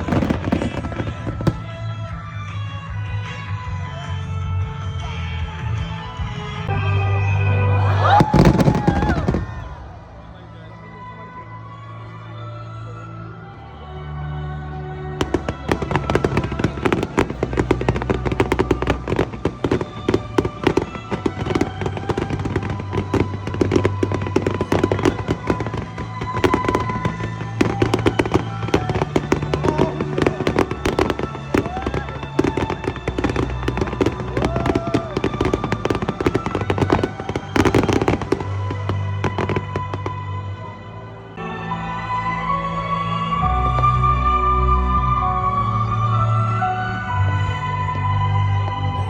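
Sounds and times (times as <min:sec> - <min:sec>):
fireworks crackling and bursting: 0:00.0 - 0:03.4, 0:07.8 - 0:10.4, 0:15.2 - 0:41.4
background music: 0:00.0 - 0:49.0.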